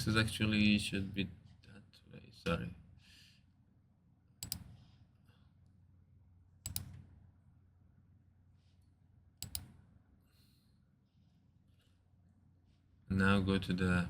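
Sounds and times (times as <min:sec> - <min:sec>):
faint room hum: 0:00.0 - 0:14.0
computer mouse clicking: 0:04.4 - 0:04.9, 0:06.6 - 0:07.1, 0:09.4 - 0:09.8.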